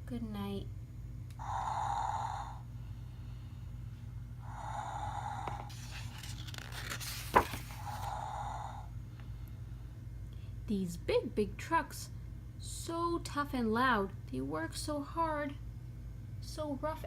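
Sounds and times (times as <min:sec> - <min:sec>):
tinny snoring from small speaker: 0:01.4 - 0:02.7, 0:04.4 - 0:05.7, 0:07.9 - 0:08.9.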